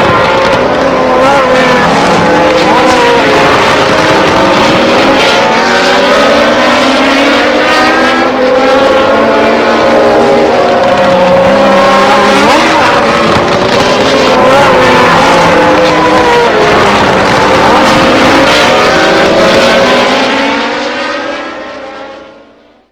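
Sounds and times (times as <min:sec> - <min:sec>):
racing car engines revving: 0:00.0 - 0:22.9.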